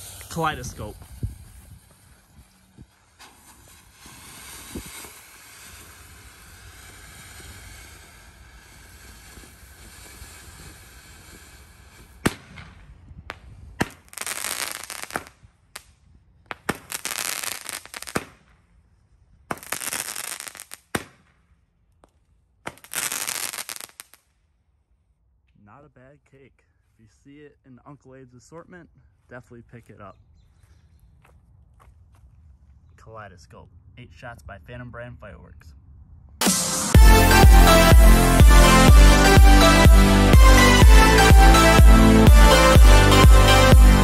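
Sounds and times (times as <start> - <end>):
firework fountain hissing: 0.0 - 12.7, 36.4 - 44.0
firework launch reports: 0.0 - 12.9
firework bursts: 0.0 - 15.9, 16.5 - 18.5, 19.4 - 21.3, 22.6 - 24.2, 36.4 - 44.0.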